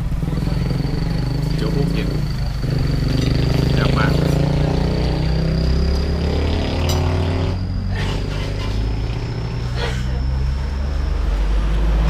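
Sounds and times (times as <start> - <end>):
vehicle engine humming: 0.0 - 12.0
high-pitched whine: 0.1 - 12.0.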